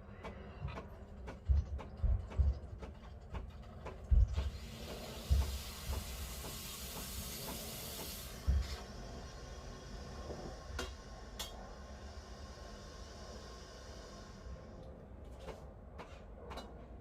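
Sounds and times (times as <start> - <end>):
steam wand hissing: 4.5 - 10.2, 10.8 - 14.6.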